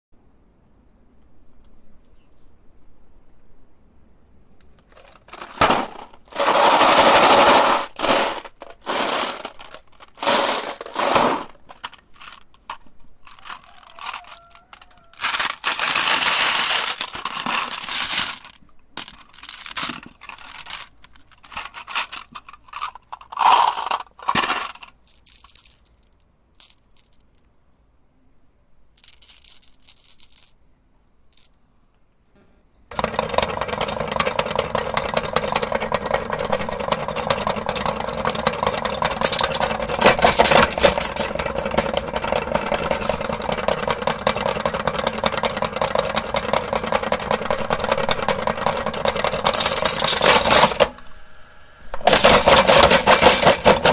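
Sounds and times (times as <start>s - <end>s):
glass marbles crunching in grinder: 5.3s - 12.5s, 13.3s - 27.4s, 29.0s - 30.5s, 33.0s - 51.2s, 51.8s - 53.9s
machine running steadily: 32.9s - 53.9s.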